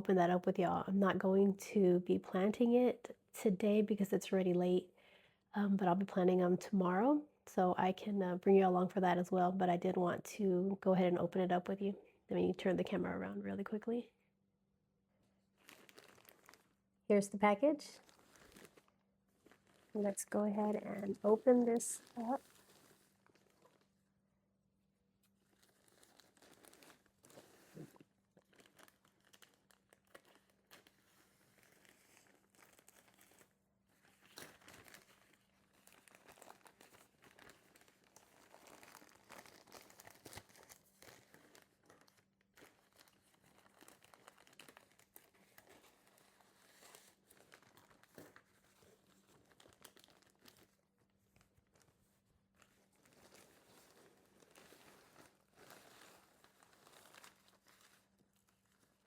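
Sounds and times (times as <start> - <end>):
packaging crinkling and tearing: 15.4 - 16.9, 17.9 - 24.1, 25.2 - 59.0.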